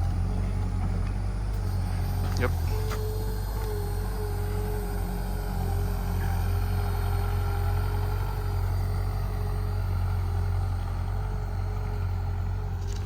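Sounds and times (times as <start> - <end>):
heavy machinery diesel engine running: 0.0 - 13.0.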